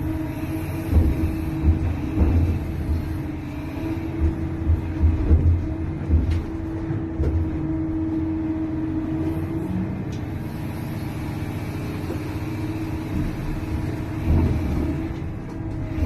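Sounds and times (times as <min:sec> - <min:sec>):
excavator engine rumbling: 0:00.0 - 0:16.0
steady hum: 0:00.0 - 0:16.0
heavy low thuds: 0:00.6 - 0:08.1.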